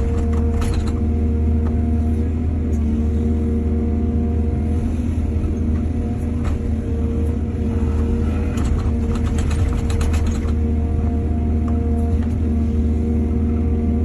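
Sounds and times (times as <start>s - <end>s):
metal clanks and rattles: 0.0s - 1.1s, 8.3s - 10.7s
diesel engine humming: 0.0s - 14.0s.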